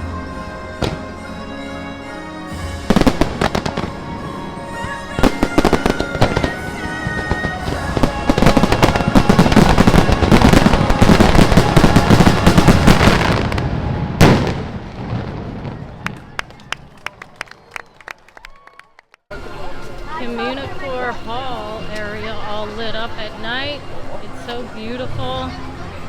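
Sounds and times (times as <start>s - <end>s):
show music: 0.0s - 14.5s
fireworks bursting: 0.8s - 1.4s, 2.5s - 16.5s.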